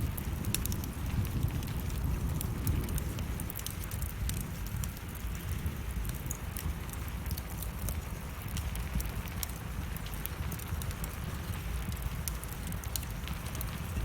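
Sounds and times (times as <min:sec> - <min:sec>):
steady rain: 0:00.0 - 0:14.0
wood fire crackling: 0:00.0 - 0:14.0.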